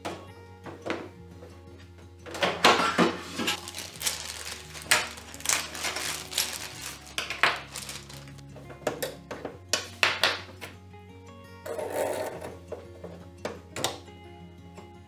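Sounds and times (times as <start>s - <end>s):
soft background music: 0.0s - 15.0s
small hard objects clicking: 3.5s - 9.1s.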